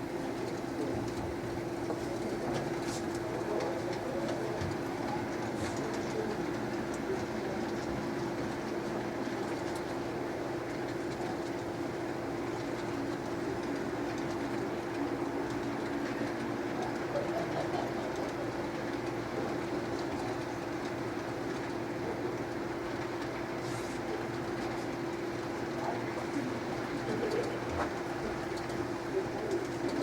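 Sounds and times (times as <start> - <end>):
model train humming on track: 0.0 - 30.0.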